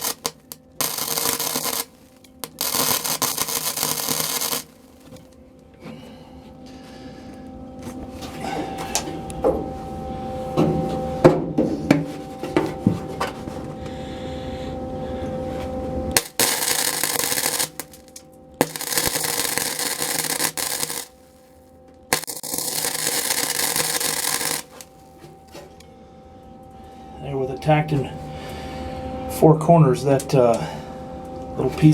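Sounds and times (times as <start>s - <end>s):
welding arc hissing: 0.0s - 5.3s, 16.1s - 21.5s, 22.1s - 25.1s.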